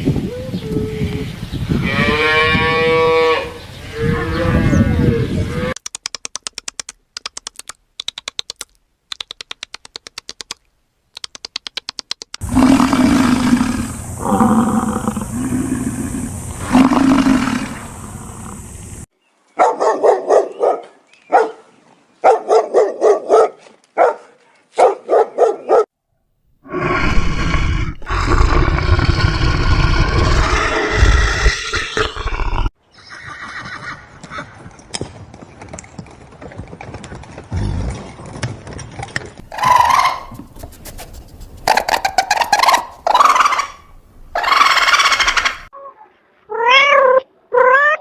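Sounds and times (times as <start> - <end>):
long low animal call: 12.4 - 18.7
loud rough animal call: 12.4 - 18.7, 26.6 - 32.7
horse whinnies: 30.0 - 34.6.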